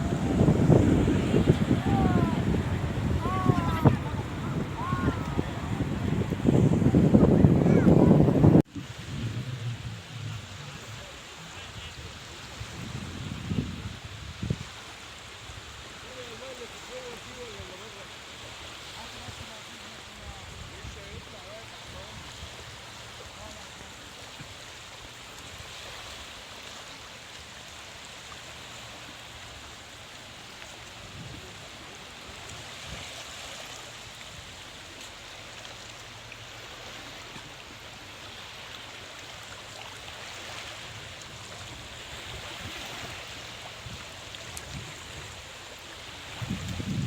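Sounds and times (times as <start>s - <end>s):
low buffeting: 0.0s - 8.7s
sea waves washing on shore: 0.0s - 47.0s.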